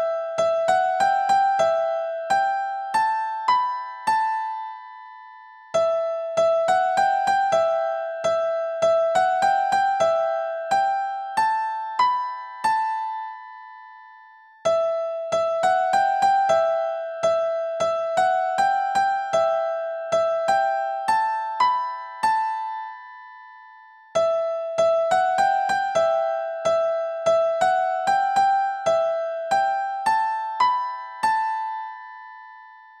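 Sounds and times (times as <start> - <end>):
hymn melody on piano keyboard: 0.0 - 33.0.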